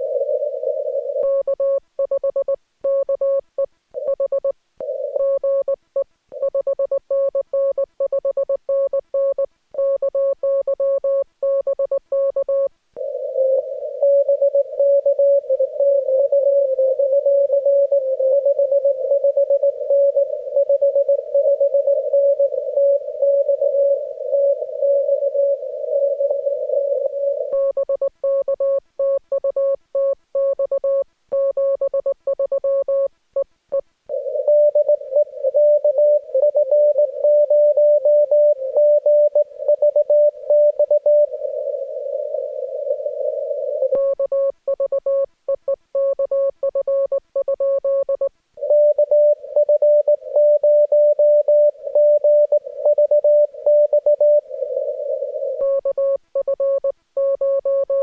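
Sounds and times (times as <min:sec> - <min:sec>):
radio receiver hiss: 0:22.0 - 0:27.5, 0:41.3 - 0:43.9, 0:54.4 - 0:55.6
morse code sidetone beeps: 0:34.2 - 0:41.7, 0:42.6 - 0:45.3, 0:46.0 - 0:58.0.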